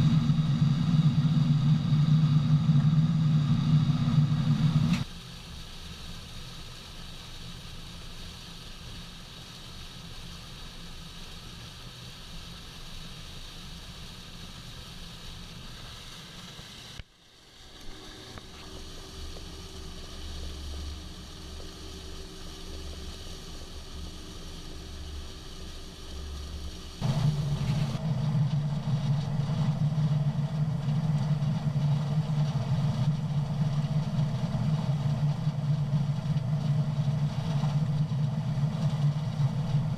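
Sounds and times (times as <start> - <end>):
farm machinery engines running: 0.0 - 5.0, 17.9 - 39.9.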